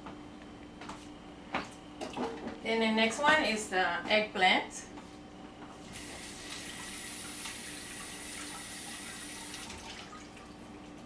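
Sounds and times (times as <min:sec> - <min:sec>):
tap running water into sink: 0:06.0 - 0:10.3.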